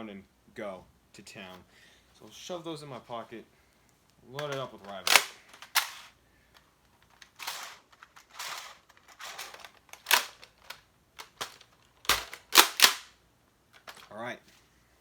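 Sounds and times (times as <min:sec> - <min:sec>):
plastic clicks and rattles: 0:04.4 - 0:13.1, 0:13.7 - 0:14.1.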